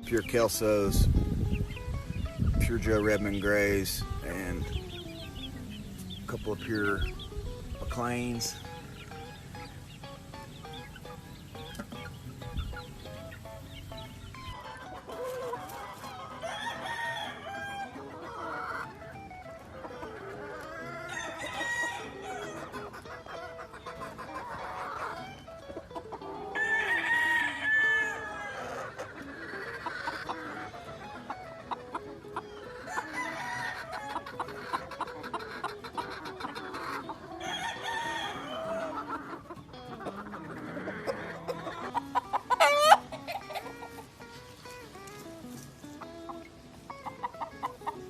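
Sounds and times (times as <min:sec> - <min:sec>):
chicken clucking: 0:00.0 - 0:48.0
roosters crowing: 0:01.6 - 0:48.0.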